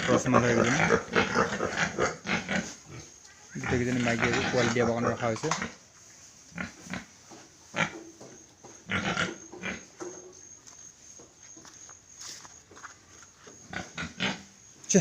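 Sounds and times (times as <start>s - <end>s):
pigs grunting: 0.0s - 5.8s, 6.5s - 10.2s, 13.6s - 14.5s.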